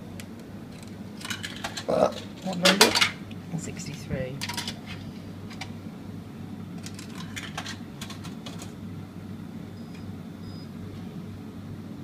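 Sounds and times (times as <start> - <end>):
vending machine hum: 0.0 - 12.0.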